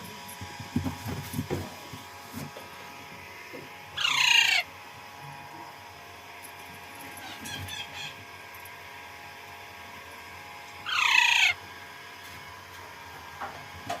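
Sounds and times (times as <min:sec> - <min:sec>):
parakeet harsh screech: 0:04.0 - 0:04.7, 0:07.2 - 0:08.2, 0:10.8 - 0:11.6
parakeet short calls: 0:04.0 - 0:04.7, 0:07.2 - 0:08.2, 0:10.8 - 0:11.6.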